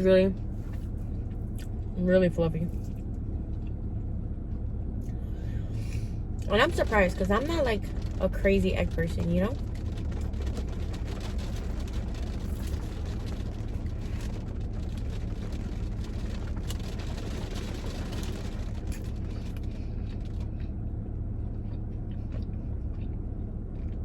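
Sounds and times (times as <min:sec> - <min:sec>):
low rumble: 0:00.0 - 0:24.0
chewing clicks and crackles: 0:06.4 - 0:24.0.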